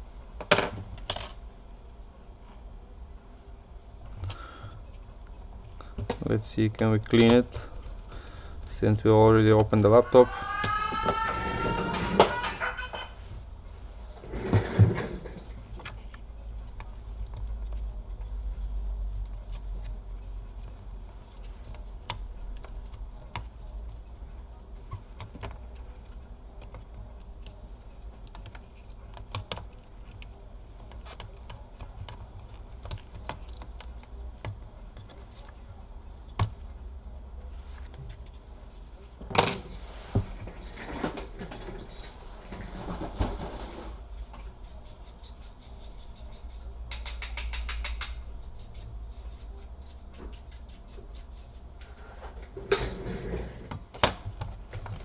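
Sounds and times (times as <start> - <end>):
low steady hum: 0.0 - 55.0
tools clicking on laptop parts: 24.8 - 35.5, 46.9 - 48.2.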